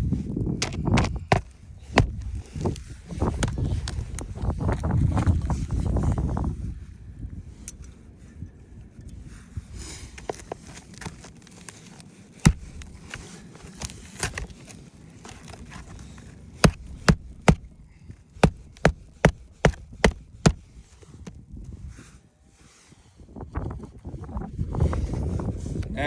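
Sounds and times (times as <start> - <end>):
light scraping and handling noise: 0.1 - 6.2, 9.1 - 23.0
hammer striking nails: 0.6 - 2.2, 12.5 - 13.1, 16.6 - 17.7, 18.4 - 20.6.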